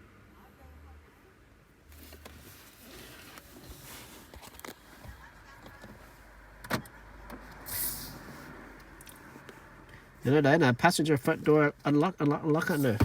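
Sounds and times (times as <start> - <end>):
short hiss: 7.7 - 8.4.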